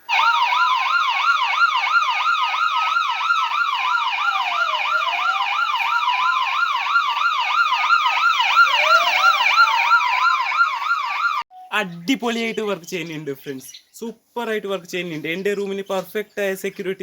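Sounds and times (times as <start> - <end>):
siren yelp and wail: 0.0 - 11.5.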